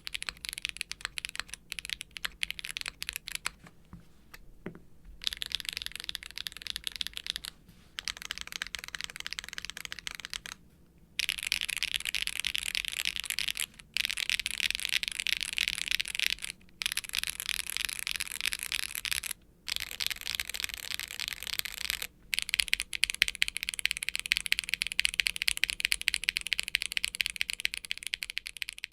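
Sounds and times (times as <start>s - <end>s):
fast mechanical keyboard typing: 0.0s - 3.6s, 5.2s - 10.6s, 11.2s - 28.9s.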